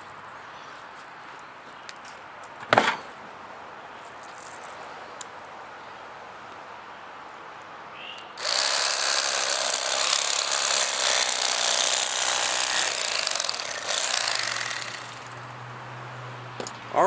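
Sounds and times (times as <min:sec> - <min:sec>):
electric knife running: 0:08.4 - 0:15.5.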